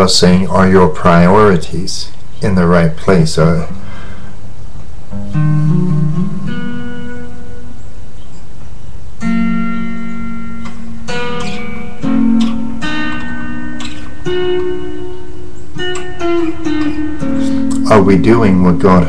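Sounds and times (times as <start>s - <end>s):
guitar chords ringing: 5.0s - 8.5s, 9.2s - 19.0s.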